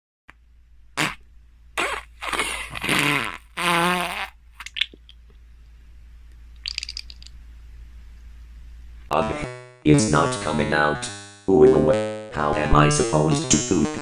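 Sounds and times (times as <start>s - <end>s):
cartoon fart blasts: 1.0s - 1.2s, 1.8s - 4.4s, 9.1s - 9.8s, 11.6s - 14.0s.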